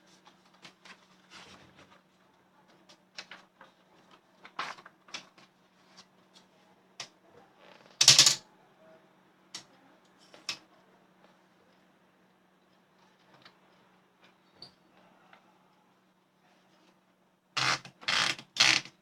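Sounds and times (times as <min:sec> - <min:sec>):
manual typewriter clacking: 0:08.0 - 0:08.4
typewriter rasping clatter: 0:08.0 - 0:08.4.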